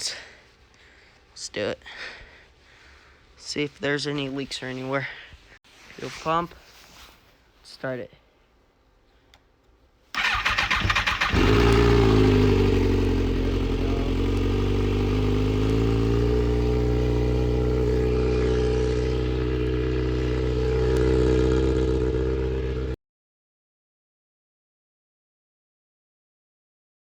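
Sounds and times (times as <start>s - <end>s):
motorcycle starter cranking: 10.2s - 17.6s
motorcycle engine idling: 10.2s - 23.0s.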